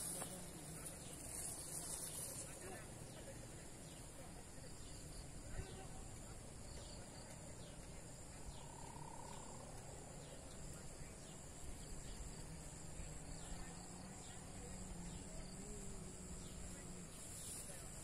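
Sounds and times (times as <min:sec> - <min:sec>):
high-pitched insect buzzing: 0:00.0 - 0:02.6.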